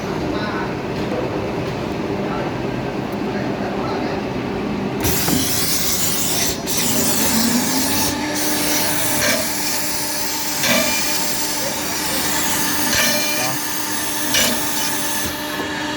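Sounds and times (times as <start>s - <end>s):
drill rasping cut: 5.0s - 15.9s
drill spindle hum: 5.0s - 15.9s.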